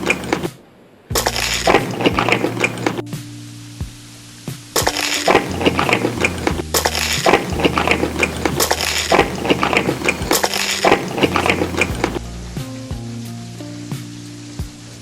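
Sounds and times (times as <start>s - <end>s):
low background music: 1.2s - 15.0s
crunchy food being chewed: 4.8s - 12.2s.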